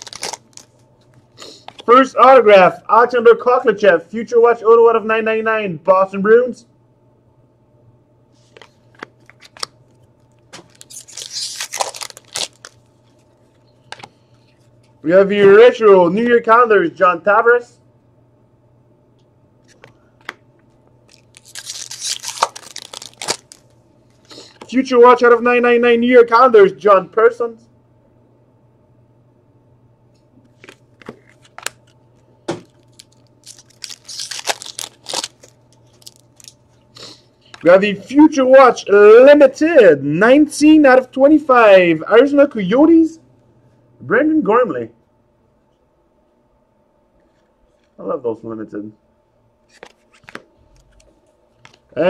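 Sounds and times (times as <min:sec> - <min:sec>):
plastic packaging crinkling: 0:00.0 - 0:00.8, 0:08.8 - 0:14.1, 0:21.0 - 0:24.6, 0:30.6 - 0:32.0, 0:32.6 - 0:36.8
cards being handled: 0:08.4 - 0:15.6, 0:19.6 - 0:20.4, 0:21.1 - 0:24.8, 0:30.5 - 0:36.8, 0:49.6 - 0:51.9.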